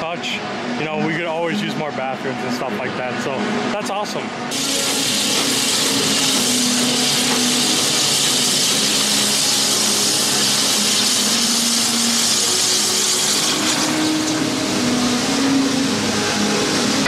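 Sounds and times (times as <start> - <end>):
loud steady hiss: 4.5 - 17.0.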